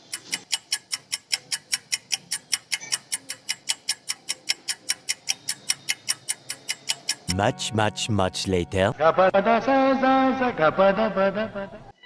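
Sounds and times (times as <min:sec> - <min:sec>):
clock ticking: 0:00.0 - 0:09.0.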